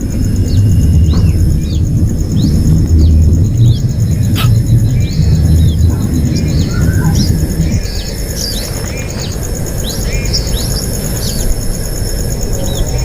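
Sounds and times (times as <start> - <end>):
low rumble: 0.0 - 8.6
birds chirping: 0.0 - 13.0.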